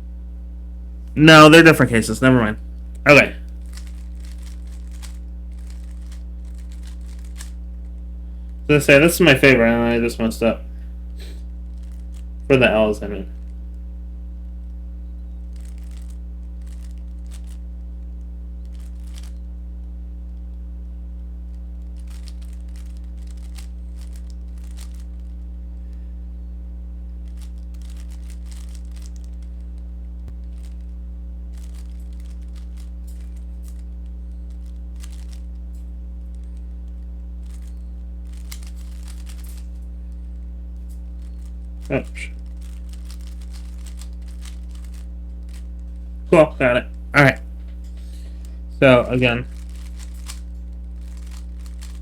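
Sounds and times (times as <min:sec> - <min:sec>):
low electrical hum: 0:00.0 - 0:52.0
puzzle cube clicking and rattling: 0:03.6 - 0:07.6, 0:15.6 - 0:17.6, 0:18.7 - 0:19.3, 0:22.0 - 0:25.3, 0:27.3 - 0:29.4, 0:34.6 - 0:35.5, 0:38.3 - 0:39.7, 0:41.3 - 0:45.7, 0:49.4 - 0:52.0.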